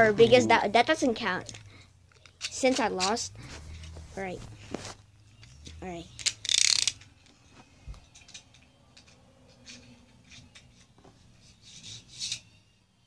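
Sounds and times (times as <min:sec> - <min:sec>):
plastic toy tops clicking and rustling: 0:01.4 - 0:03.9, 0:05.4 - 0:07.4, 0:08.0 - 0:10.9, 0:11.8 - 0:12.5.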